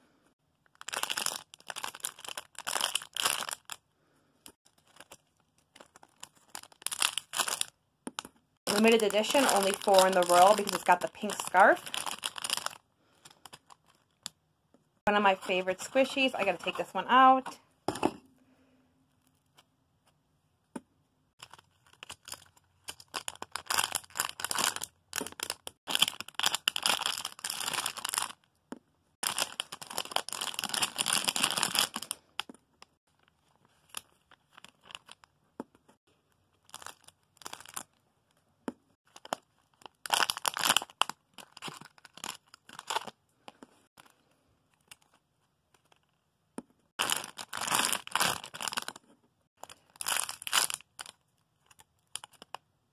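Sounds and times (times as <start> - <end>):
plastic bag crinkling and rustling: 0.7 - 3.8, 4.6 - 7.7, 8.7 - 14.3, 21.4 - 28.4, 29.2 - 35.3, 36.6 - 38.0, 39.1 - 43.2, 47.0 - 49.0, 49.6 - 52.6.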